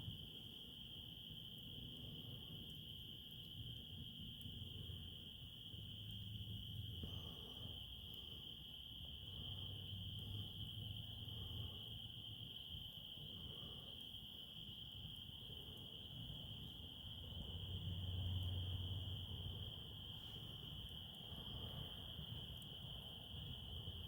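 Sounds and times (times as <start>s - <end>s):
insects trilling: 0.0s - 24.0s.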